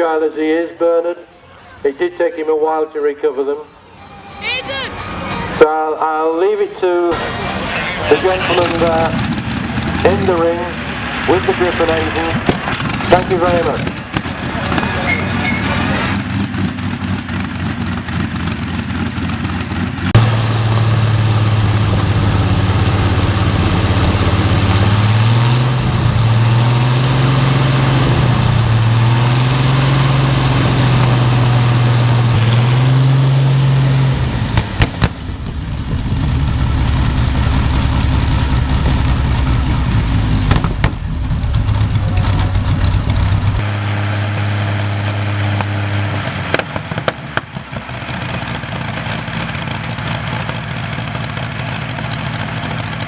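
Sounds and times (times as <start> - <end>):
aero engine revving: 6.8 - 53.0
engine backfire cracks: 11.4 - 20.8, 34.5 - 53.0.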